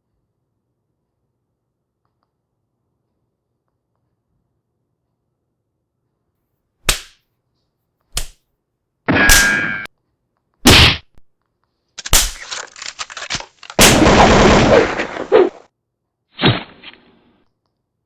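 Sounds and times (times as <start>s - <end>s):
gunshot-like bangs and hits: 10.7s - 11.2s.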